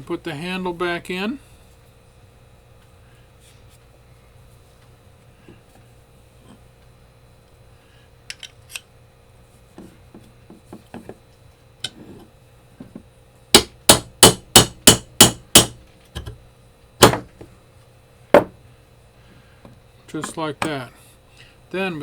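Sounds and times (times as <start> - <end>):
hammer striking metal: 13.6 - 15.8.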